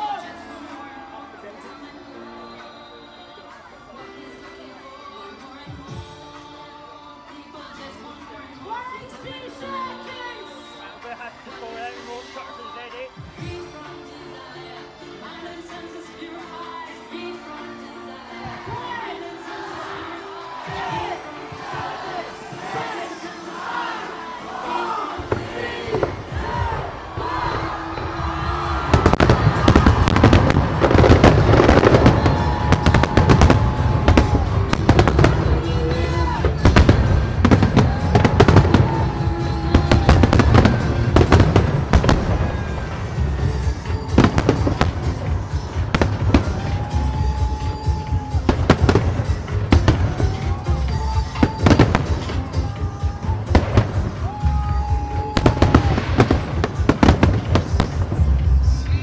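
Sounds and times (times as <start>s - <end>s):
music playing: 0.0s - 59.0s
fireworks bangs and crackles: 25.2s - 59.0s.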